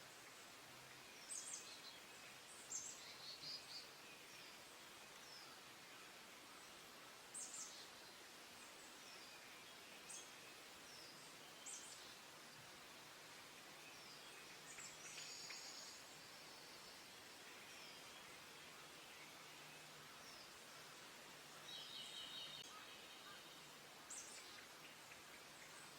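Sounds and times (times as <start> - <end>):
songbirds chirping: 0.0 - 25.9
steady outdoor hiss: 0.0 - 25.9.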